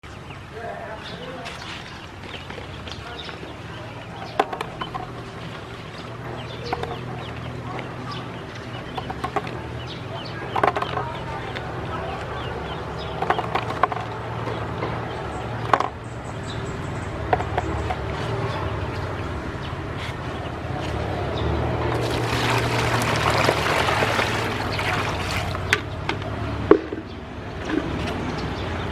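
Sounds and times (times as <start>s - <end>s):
ducklings peeping: 0.1s - 22.6s.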